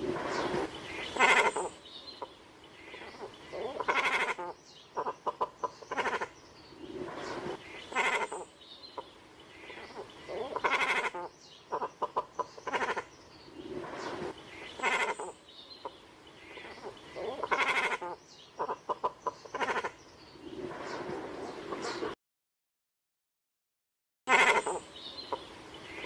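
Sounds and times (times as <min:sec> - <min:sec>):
cormorants croaking: 0:00.1 - 0:22.2, 0:24.3 - 0:25.6.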